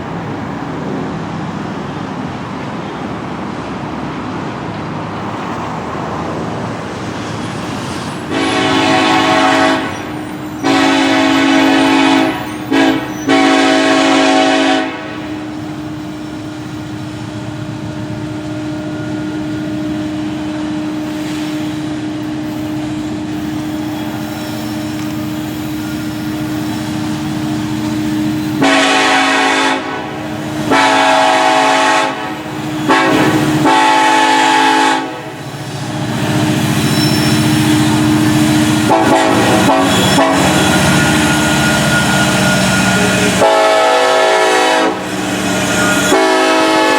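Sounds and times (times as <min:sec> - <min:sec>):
passing train hum: 0:00.0 - 0:46.9
locomotive air horn blasts: 0:08.3 - 0:15.5, 0:28.2 - 0:35.4, 0:36.9 - 0:46.9.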